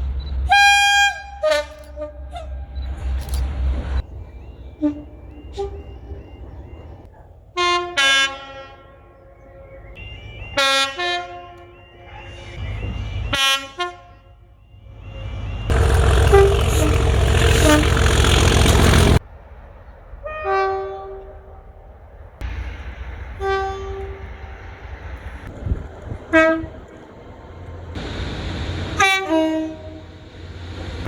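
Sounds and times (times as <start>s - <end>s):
train horn blasts: 0.5s - 2.8s, 4.6s - 7.0s, 7.6s - 19.2s, 20.2s - 21.8s, 22.4s - 26.9s, 29.0s - 30.3s
loud rushing noise: 15.7s - 19.2s.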